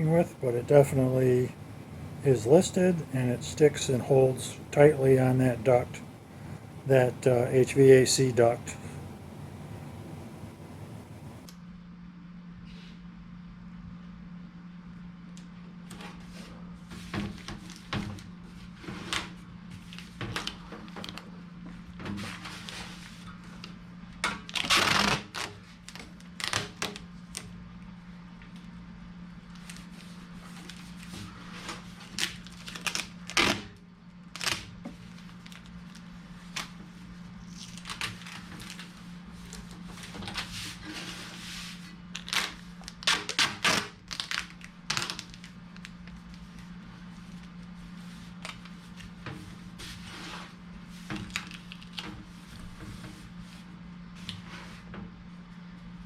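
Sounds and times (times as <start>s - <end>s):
steady low hum: 0.0s - 11.5s.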